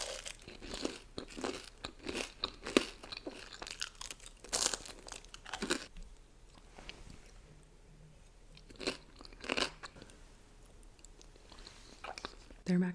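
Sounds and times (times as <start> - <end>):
crunchy chewing of fried chicken: 0.0 - 5.9, 8.6 - 10.0.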